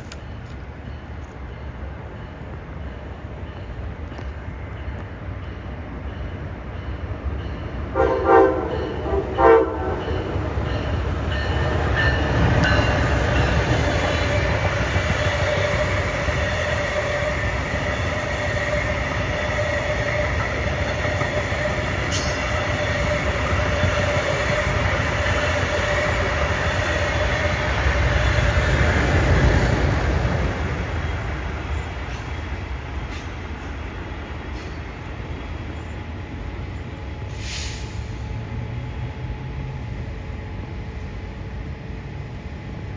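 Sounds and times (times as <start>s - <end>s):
passing train rumble and whine: 0.0s - 42.9s
train horn blasts: 7.9s - 11.7s.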